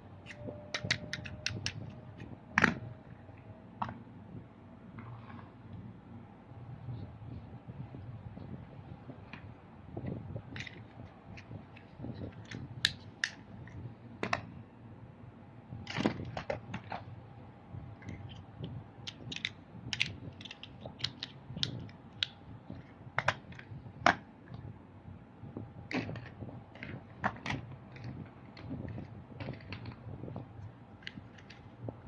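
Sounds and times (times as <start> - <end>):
plastic toy trucks clicking and tapping: 0.3 - 2.0, 10.5 - 13.4, 18.0 - 24.2, 25.9 - 30.0, 31.0 - 31.7.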